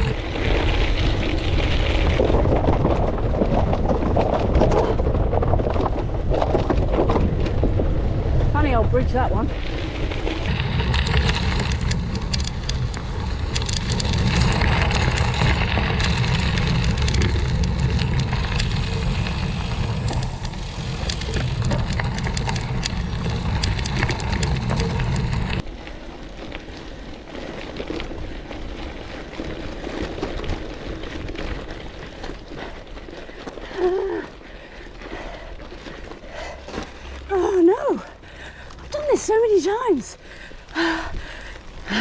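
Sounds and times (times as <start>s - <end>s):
wind buffeting microphone: 0.0s - 25.7s
bicycle tyres crunching on gravel: 0.0s - 42.0s.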